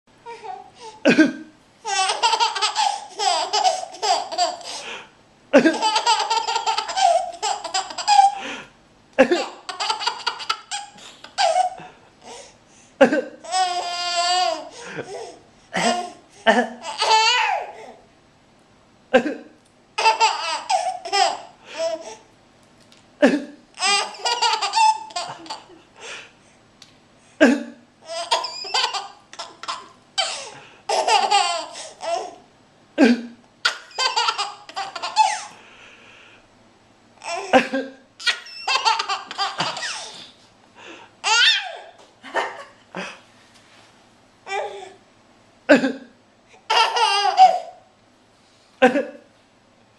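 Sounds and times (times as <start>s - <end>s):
baby laughing: 1.8s - 4.8s, 5.6s - 8.5s, 9.2s - 12.4s, 13.4s - 18.0s, 20.0s - 22.2s, 23.2s - 25.8s, 28.0s - 32.4s, 33.6s - 35.6s, 37.2s - 40.3s, 41.2s - 42.6s, 46.6s - 47.8s.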